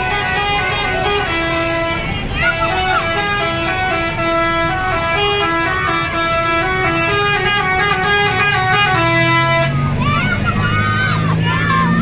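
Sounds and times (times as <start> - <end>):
musical bus horn tune: 0.0 - 10.0.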